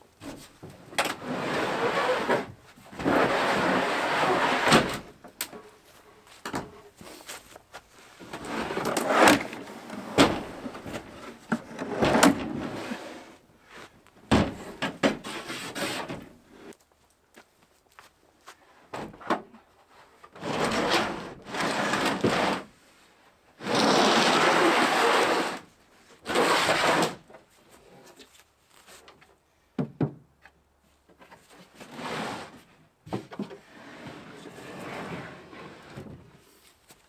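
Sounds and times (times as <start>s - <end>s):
scraping sliding noises: 1.1s - 5.1s, 6.9s - 13.9s, 14.7s - 16.8s, 23.6s - 27.3s, 31.4s - 32.7s, 33.6s - 36.9s.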